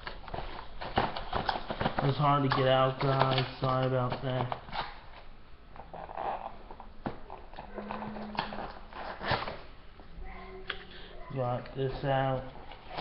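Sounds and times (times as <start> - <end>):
cardboard packing rustling and scraping: 0.0 - 5.0, 5.9 - 9.7.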